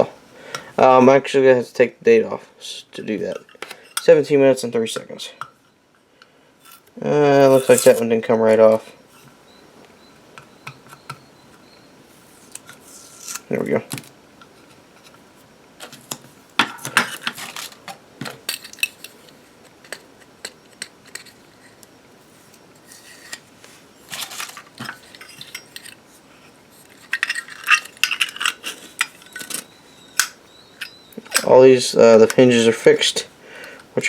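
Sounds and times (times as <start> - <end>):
metal lighter cases clinking: 26.9 - 31.5.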